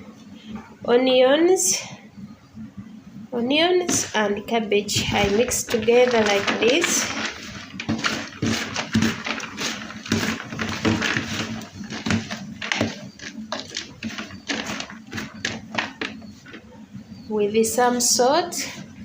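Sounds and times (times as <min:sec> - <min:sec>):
raw vegetables tossed in a bowl: 0:03.8 - 0:16.7.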